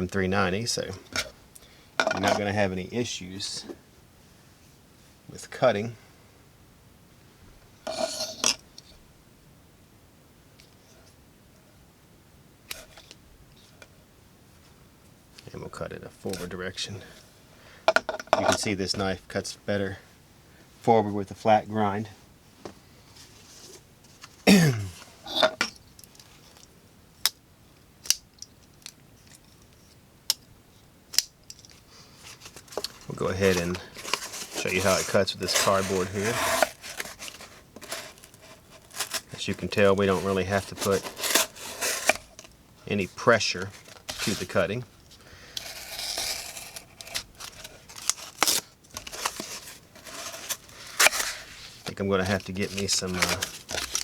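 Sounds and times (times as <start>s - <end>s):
knife slicing cardboard: 33.5s - 39.4s, 40.0s - 42.3s.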